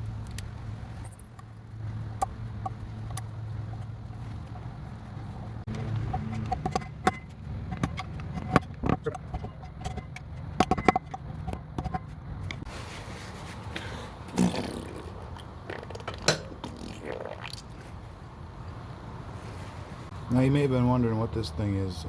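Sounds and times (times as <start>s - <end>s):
metal parts and tools clicking: 0.2s - 1.6s.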